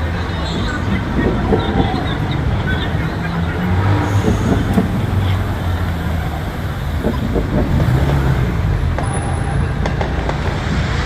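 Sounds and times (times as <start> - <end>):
city street rumble: 0.0 - 11.0
faint voices: 0.0 - 11.0.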